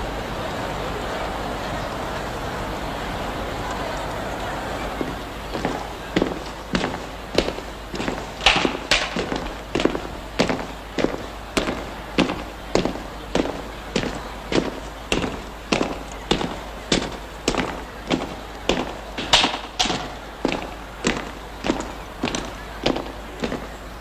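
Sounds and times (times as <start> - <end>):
sharp ringing cracks: 7.4 - 9.6.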